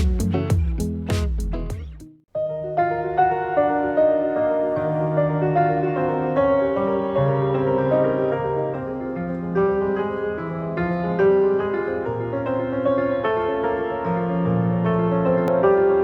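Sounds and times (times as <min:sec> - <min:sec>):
solo piano music through speaker: 0:02.3 - 0:16.0.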